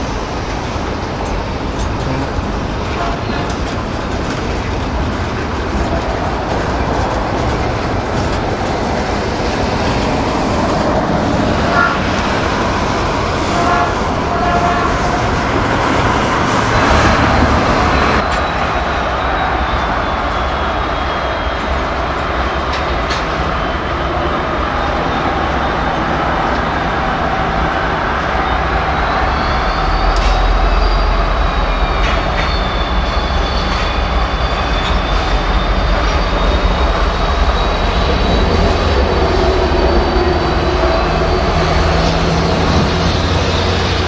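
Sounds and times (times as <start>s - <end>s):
train rolling past: 0.0s - 44.0s.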